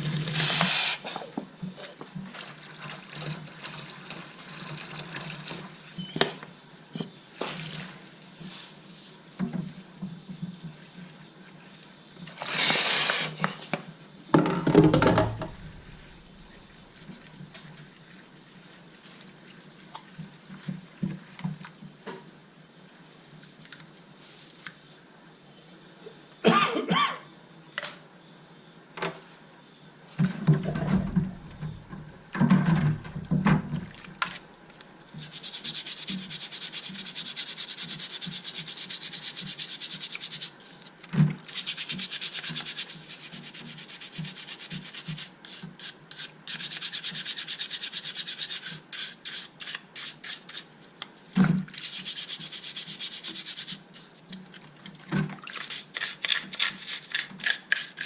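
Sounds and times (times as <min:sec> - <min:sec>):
handling noise and knocks: 0:14.4 - 0:17.6, 0:30.2 - 0:34.4
rubbing on hard surface: 0:35.1 - 0:40.9, 0:41.5 - 0:50.7, 0:51.7 - 0:54.2, 0:55.5 - 0:58.0.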